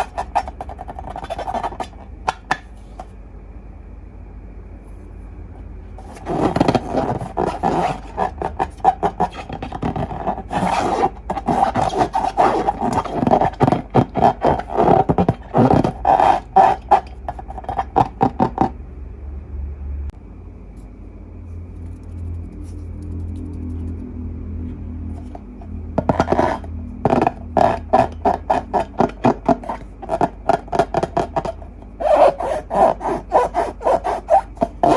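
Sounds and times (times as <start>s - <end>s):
slime squelching and scraping: 0.0s - 3.1s, 6.0s - 18.8s, 25.0s - 34.9s.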